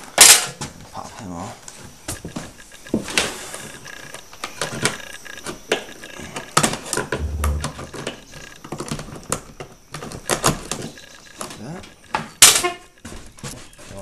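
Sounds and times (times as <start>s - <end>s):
low dull thump: 7.2s - 7.8s.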